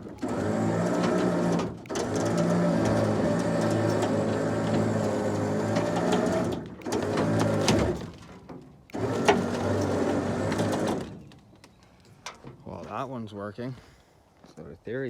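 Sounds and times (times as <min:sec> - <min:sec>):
winch motor running under load: 0:00.0 - 0:11.3.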